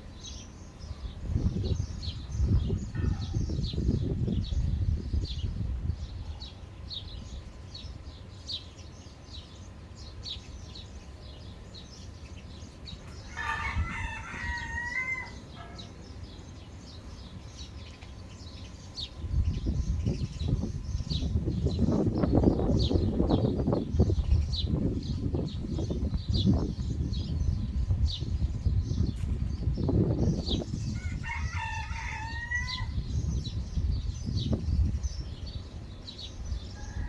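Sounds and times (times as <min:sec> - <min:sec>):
small birds chirping: 0:00.0 - 0:37.0
rooster crowing: 0:13.2 - 0:15.9, 0:31.0 - 0:33.0, 0:36.7 - 0:37.0.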